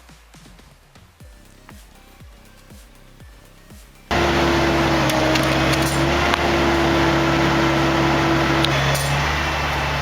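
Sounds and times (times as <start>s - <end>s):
steady kick drum: 0.0s - 4.2s
electronic music: 1.2s - 10.0s.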